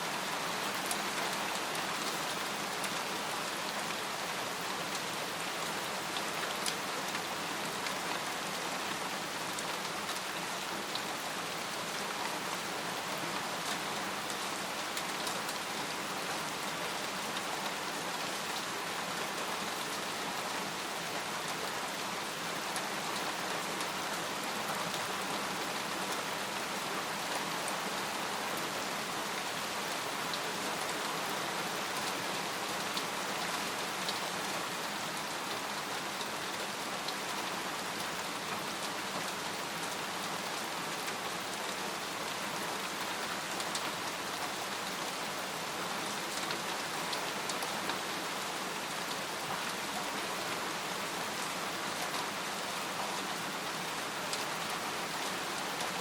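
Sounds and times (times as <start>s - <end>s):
rain falling on a tent: 0.0s - 56.0s.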